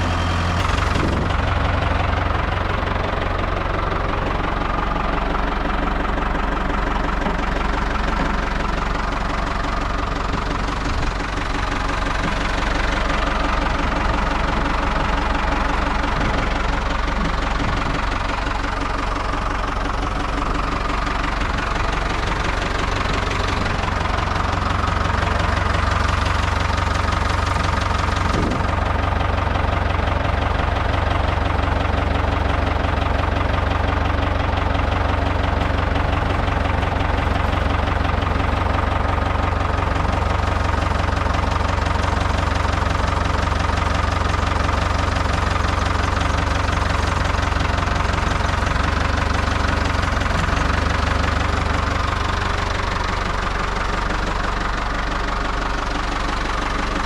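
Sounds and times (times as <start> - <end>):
tractor engine running: 0.0 - 57.0.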